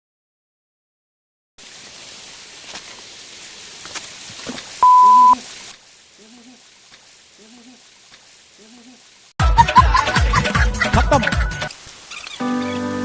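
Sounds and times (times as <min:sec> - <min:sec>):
electronic beep tone: 0:04.8 - 0:05.4.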